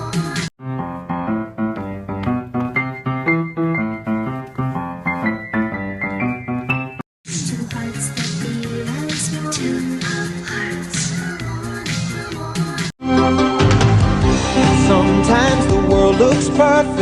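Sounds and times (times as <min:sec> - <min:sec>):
busier song: 0:00.0 - 0:17.0
piano music with quick notes: 0:00.6 - 0:07.0.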